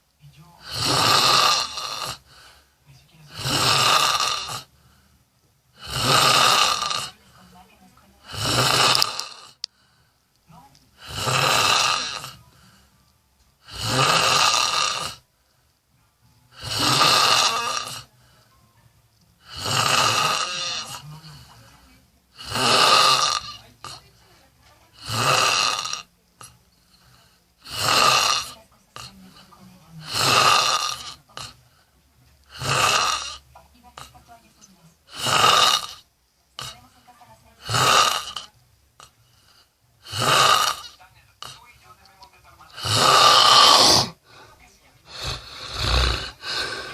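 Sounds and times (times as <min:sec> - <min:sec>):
quiet breaths: 0:00.0 - 0:46.9
person snoring loudly: 0:00.6 - 0:02.3, 0:03.3 - 0:04.7, 0:05.8 - 0:07.1, 0:08.3 - 0:09.6, 0:11.0 - 0:12.4, 0:13.6 - 0:15.2, 0:16.6 - 0:18.1, 0:19.4 - 0:21.0, 0:22.4 - 0:24.0, 0:25.0 - 0:26.1, 0:27.6 - 0:28.6, 0:30.0 - 0:31.5, 0:32.5 - 0:33.4, 0:35.1 - 0:36.0, 0:37.6 - 0:38.5, 0:40.0 - 0:41.0, 0:42.8 - 0:44.2, 0:45.1 - 0:46.9
faint breath sounds: 0:02.2 - 0:03.0, 0:04.6 - 0:06.1, 0:07.1 - 0:11.4, 0:12.2 - 0:14.0, 0:18.0 - 0:18.7, 0:26.4 - 0:27.8, 0:31.5 - 0:32.8, 0:39.1 - 0:40.4, 0:43.7 - 0:46.9.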